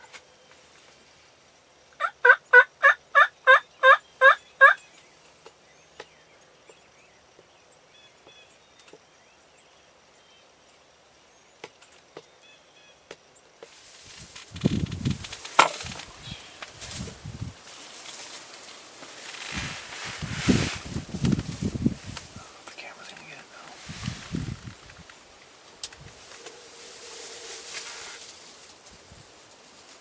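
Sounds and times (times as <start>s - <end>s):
turkey yelps: 2.0s - 4.8s
rustling: 13.7s - 30.0s.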